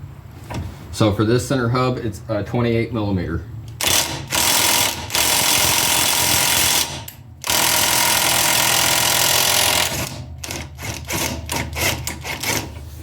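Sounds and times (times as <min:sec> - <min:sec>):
impact wrench hammering: 0:03.8 - 0:12.7.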